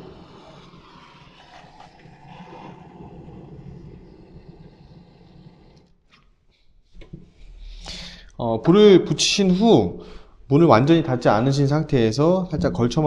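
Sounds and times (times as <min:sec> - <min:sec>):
gas torch flame rushing: 0:00.0 - 0:07.6.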